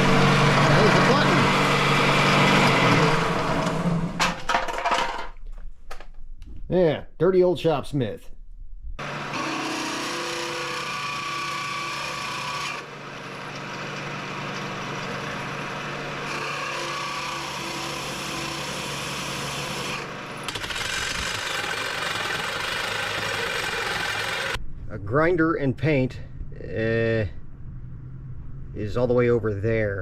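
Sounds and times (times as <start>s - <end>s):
motor hum: 0.0s - 4.4s, 9.0s - 24.6s
rasping cutting noise: 9.0s - 24.6s.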